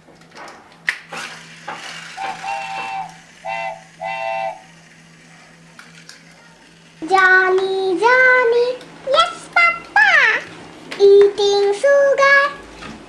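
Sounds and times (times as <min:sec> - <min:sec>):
plastic toy clicking and rattling: 0:00.2 - 0:08.9.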